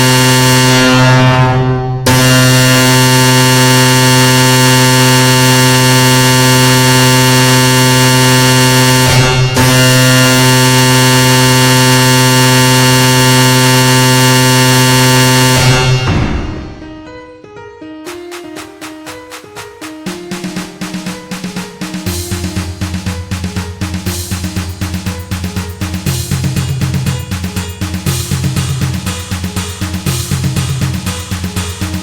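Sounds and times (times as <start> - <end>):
harsh wall of midi tones: 18.1 - 32.0.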